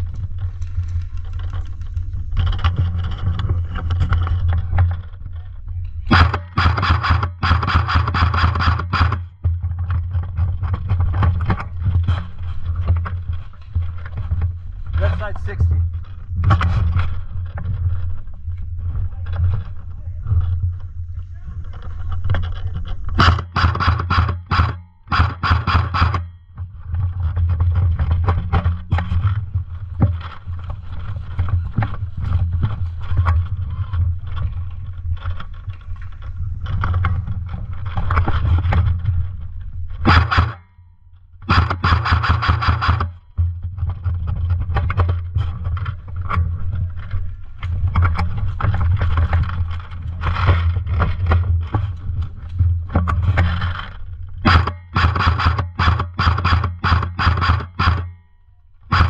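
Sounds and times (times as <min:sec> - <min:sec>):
low rumble: 0:00.0 - 0:56.2
airsoft guns firing: 0:06.1 - 0:09.3, 0:23.2 - 0:26.3, 0:40.0 - 0:40.6, 0:41.4 - 0:43.1, 0:54.4 - 0:58.2.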